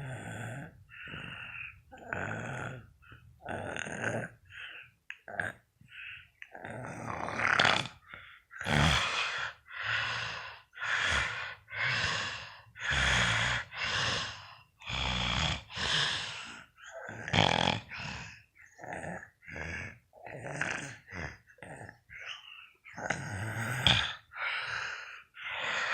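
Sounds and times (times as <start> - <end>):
person snoring: 0.0 - 25.9.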